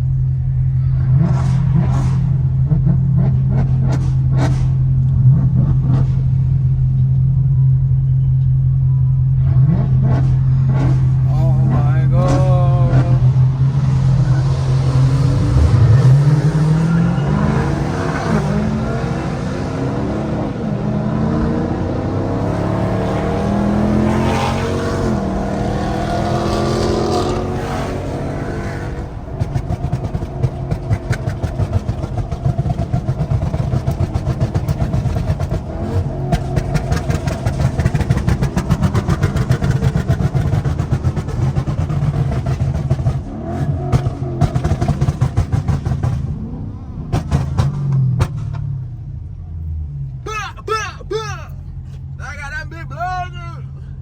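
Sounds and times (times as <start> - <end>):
car engine revving and accelerating: 0.0 - 8.2, 8.9 - 50.2
crackling exhaust pulses: 9.9 - 49.0.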